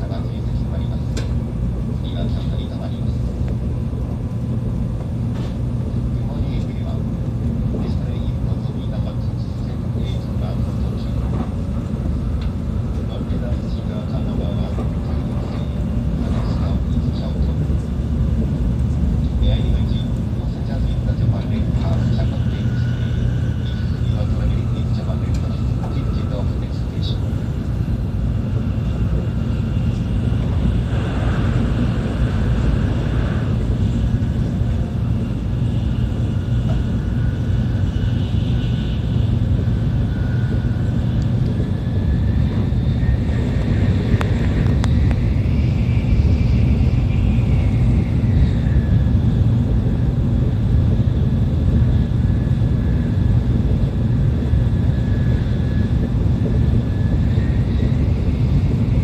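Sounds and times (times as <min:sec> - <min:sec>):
train cabin low rumble: 0:00.0 - 0:59.0
faint high whine: 0:19.2 - 0:59.0.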